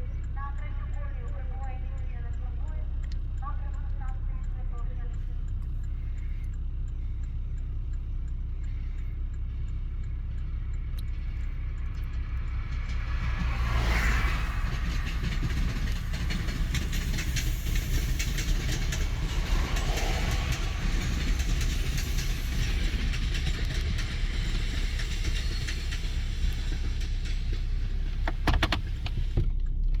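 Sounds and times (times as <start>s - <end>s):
freight train rumbling past: 10.6s - 29.4s
wheels clacking over rail joints: 11.1s - 29.4s.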